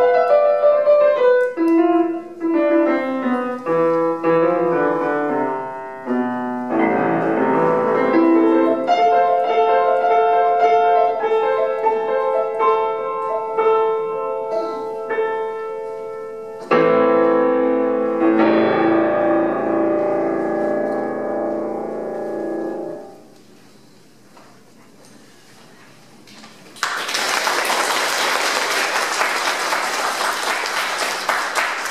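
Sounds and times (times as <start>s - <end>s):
solo piano playing: 0.0s - 23.3s.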